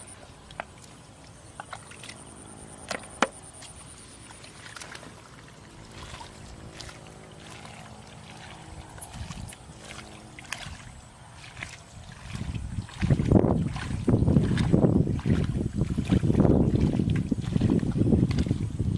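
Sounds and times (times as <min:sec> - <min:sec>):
water splashing and dripping: 0:00.0 - 0:18.9
sharp splash: 0:03.6 - 0:18.6.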